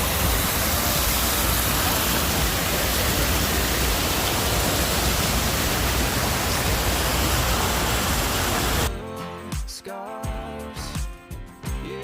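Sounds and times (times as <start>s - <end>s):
loud rushing noise with rumble: 0.0s - 8.9s.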